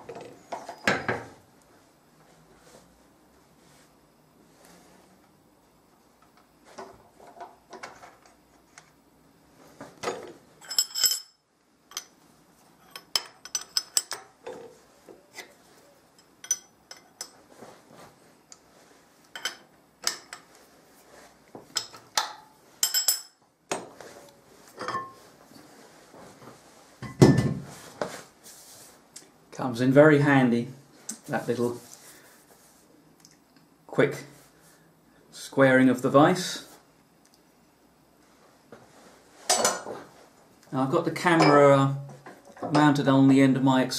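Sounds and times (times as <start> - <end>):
metal clinks and knocks: 10.6 - 12.2.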